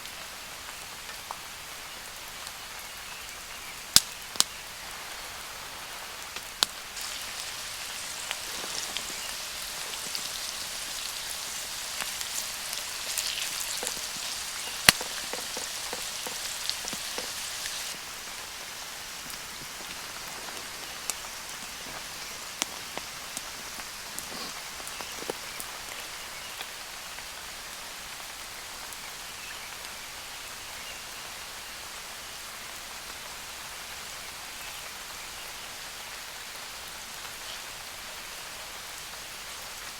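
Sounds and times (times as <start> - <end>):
steady rain in woodland: 0.0 - 39.9
sharp water drips: 6.3 - 26.7.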